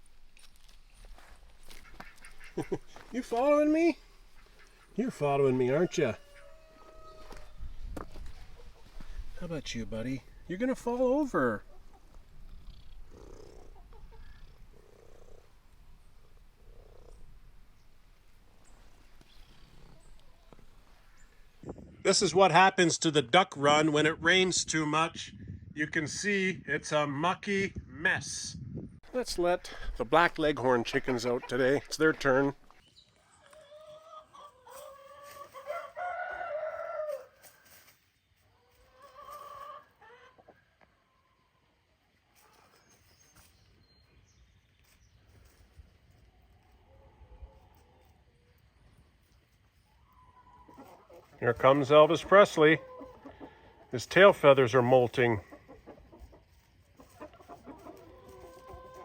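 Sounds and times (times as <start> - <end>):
chickens calling: 0.4 - 21.9, 29.1 - 37.5, 38.4 - 59.0
cat purring softly: 12.2 - 15.6, 16.2 - 17.5.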